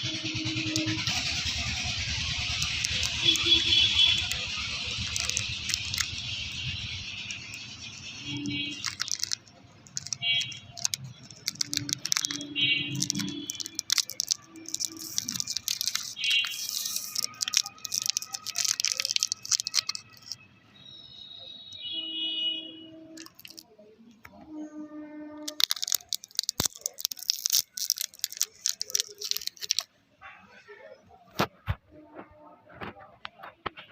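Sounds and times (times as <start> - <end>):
candy wrappers crinkling: 0.0 - 20.4, 23.0 - 24.5, 25.3 - 29.9
toffees rattling: 0.0 - 20.4, 23.0 - 24.5, 25.2 - 29.9.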